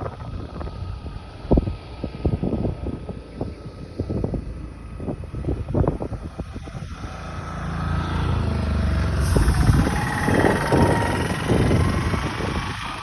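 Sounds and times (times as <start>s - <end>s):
motor engine running: 0.0s - 13.0s
rushing noise: 8.9s - 13.0s.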